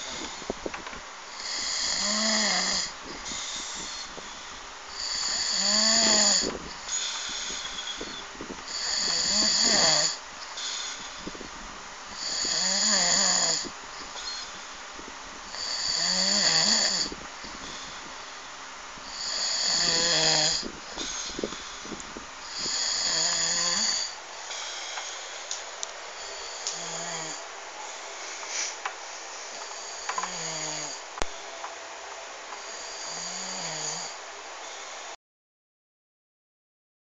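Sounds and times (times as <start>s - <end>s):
man snoring: 0.0s - 0.6s, 1.3s - 11.4s, 12.2s - 14.6s, 15.5s - 18.1s, 19.0s - 25.6s, 26.2s - 28.2s, 29.7s - 31.1s, 32.6s - 35.0s
quiet breathing: 0.0s - 31.6s, 32.5s - 35.2s.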